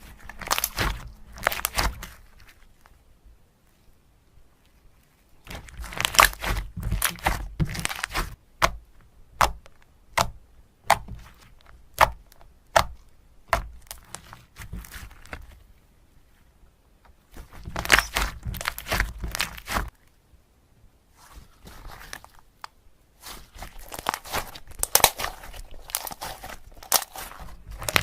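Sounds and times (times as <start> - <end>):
crunchy slime crackling: 0.0 - 3.0, 4.6 - 8.7, 9.3 - 15.7, 17.3 - 20.1, 21.1 - 28.0.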